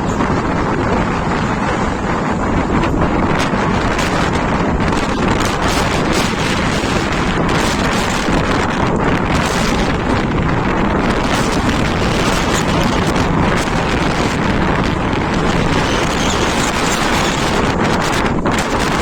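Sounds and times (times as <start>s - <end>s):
sea: 0.0s - 19.0s
storm wind blowing on microphone: 0.0s - 19.0s.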